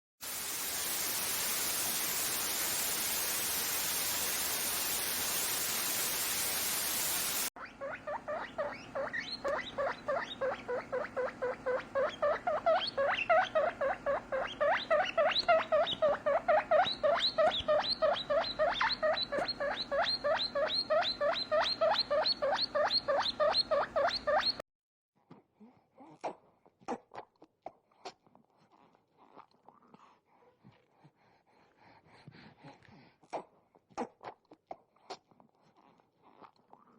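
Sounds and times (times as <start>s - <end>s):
steady hiss: 0.2s - 7.5s
guinea pig squeaking: 7.6s - 24.6s.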